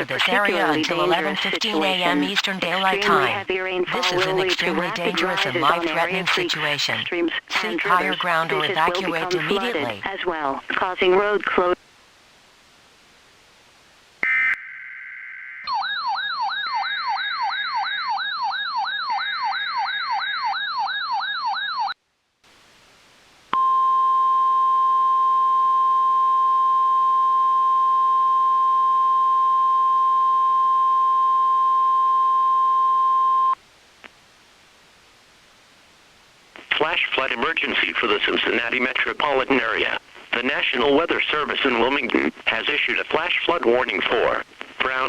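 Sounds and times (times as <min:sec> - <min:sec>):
steady warning alarm tone: 0:14.2 - 0:22.0.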